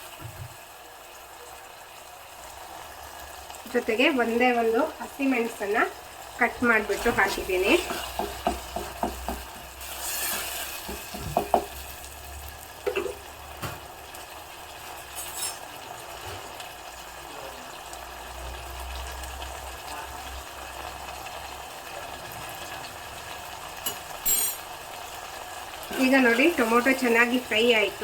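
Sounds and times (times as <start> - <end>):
vegetables sizzling in a pan: 0.0 - 28.0
spoon clinking against pan: 23.8 - 24.7.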